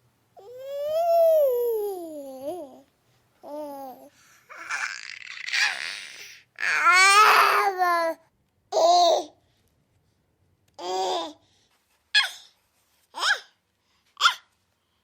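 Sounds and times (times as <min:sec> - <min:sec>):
infant fussing and crying: 0:03.5 - 0:08.1.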